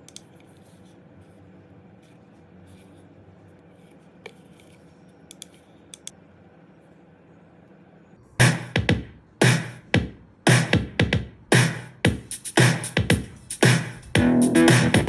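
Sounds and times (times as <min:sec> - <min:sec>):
electronic drum beat: 0:08.4 - 0:15.0
bass and guitar backing: 0:14.0 - 0:15.0.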